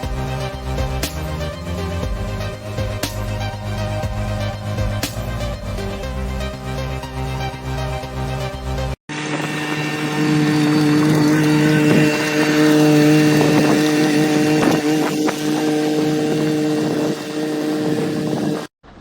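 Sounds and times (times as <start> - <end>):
excavator diesel engine running: 0.0 - 9.0.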